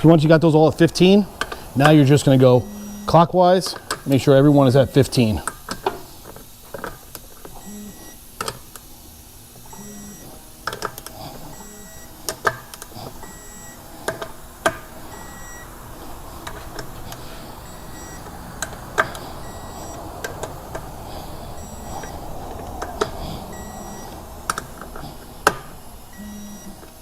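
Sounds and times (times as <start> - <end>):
torque gun short high beeps: 21.6 - 22.2.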